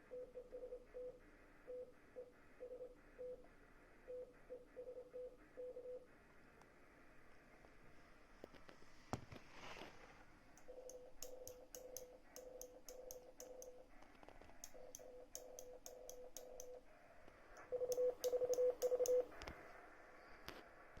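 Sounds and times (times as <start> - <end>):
key clicks: 10.6 - 13.8, 14.6 - 16.8, 17.6 - 19.4
morse code tone beeping: 17.7 - 19.3.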